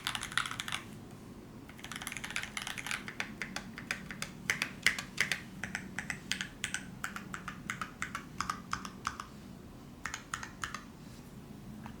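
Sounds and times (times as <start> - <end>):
mechanical keyboard typing: 0.0 - 0.8, 1.7 - 9.3, 10.0 - 10.9.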